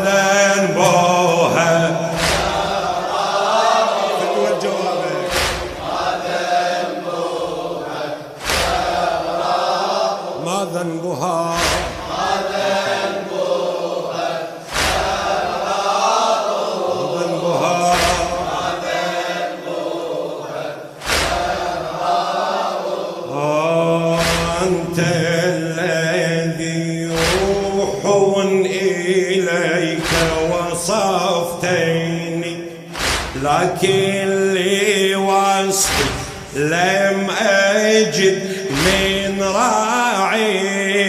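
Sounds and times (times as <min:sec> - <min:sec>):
voices chanting: 0:00.0 - 0:41.0
sharp beat strikes: 0:00.7 - 0:04.3, 0:05.2 - 0:06.6, 0:08.4 - 0:10.0, 0:11.5 - 0:13.3, 0:14.6 - 0:16.1, 0:17.6 - 0:19.0, 0:21.0 - 0:22.4, 0:24.0 - 0:28.2, 0:29.8 - 0:31.2, 0:32.8 - 0:34.3, 0:35.8 - 0:36.8, 0:38.5 - 0:39.8.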